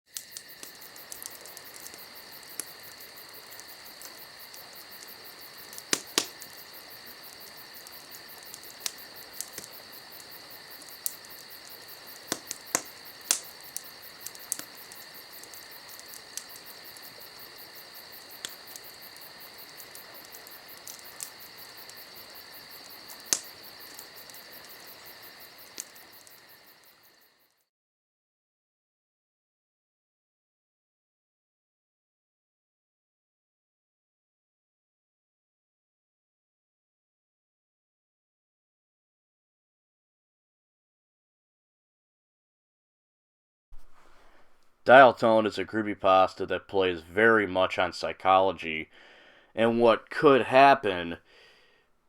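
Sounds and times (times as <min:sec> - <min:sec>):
sharp clicks and pops: 0:00.1 - 0:17.6, 0:18.2 - 0:22.0, 0:22.7 - 0:25.0
crickets chirping: 0:00.1 - 0:27.7, 0:48.8 - 0:49.7.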